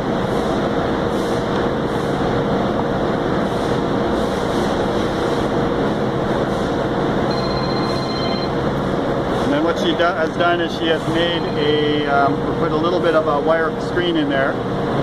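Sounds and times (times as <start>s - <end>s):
faint constant hum: 0.0s - 15.0s
workshop machinery rumble and hiss: 0.0s - 15.0s.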